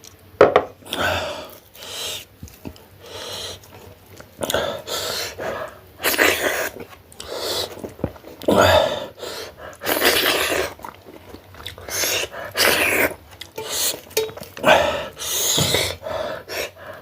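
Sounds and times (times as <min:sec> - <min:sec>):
person hissing breaths and sniffs: 0:01.2 - 0:02.3, 0:03.0 - 0:03.6, 0:14.6 - 0:17.0.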